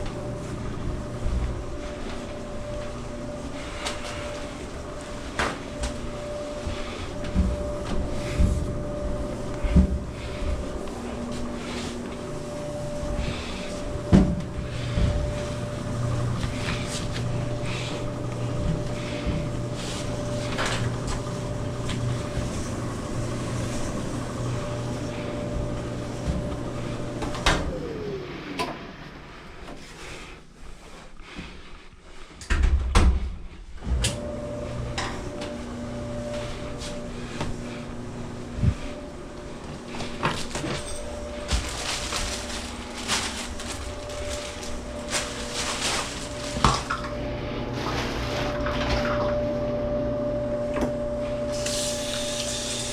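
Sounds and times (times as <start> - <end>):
dryer motor hum: 0.0 - 52.9
motor winding down whine: 21.6 - 29.4, 48.9 - 52.9.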